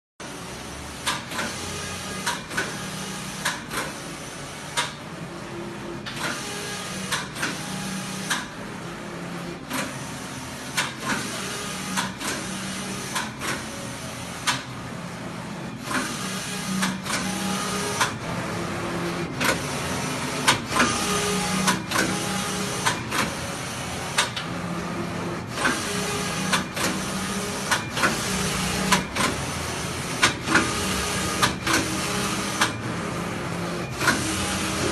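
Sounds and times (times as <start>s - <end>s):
sharp mechanical clacks: 4.7s - 5.0s, 6.0s - 8.6s, 10.7s - 13.8s, 14.4s - 14.8s, 19.4s - 19.8s, 20.4s - 23.4s, 24.1s - 24.5s, 25.6s - 29.6s, 30.2s - 32.9s
knitting machine hum: 5.5s - 34.9s.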